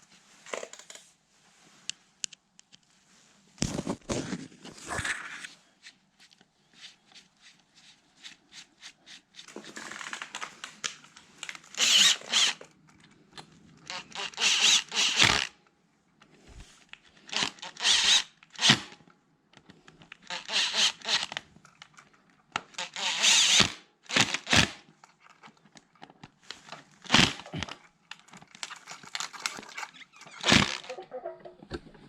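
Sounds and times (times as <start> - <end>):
small power tool bursts: 11.8 - 12.6, 14.0 - 15.5, 17.3 - 18.9, 20.3 - 21.3, 22.8 - 24.8, 30.4 - 30.9.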